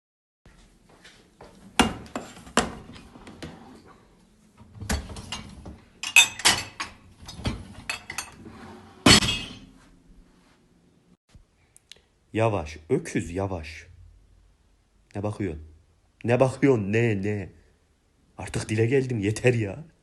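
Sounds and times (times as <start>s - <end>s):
dishes and cutlery clattering: 4.8s - 9.7s.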